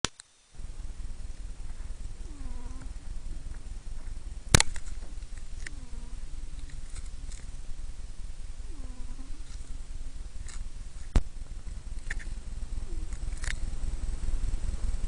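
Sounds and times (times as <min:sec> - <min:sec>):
sharp click: 0:00.0 - 0:00.3, 0:04.5 - 0:05.0
cat snoring: 0:02.2 - 0:03.1, 0:05.7 - 0:06.3, 0:08.6 - 0:09.7, 0:12.8 - 0:13.2.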